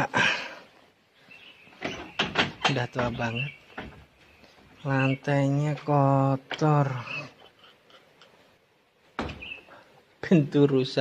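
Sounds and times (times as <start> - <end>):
door hinge creaking and scraping: 1.8 - 4.2.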